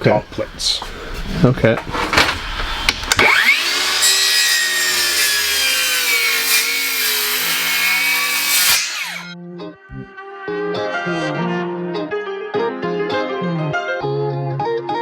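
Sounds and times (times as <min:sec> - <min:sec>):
power saw cutting wood: 0:01.9 - 0:09.4.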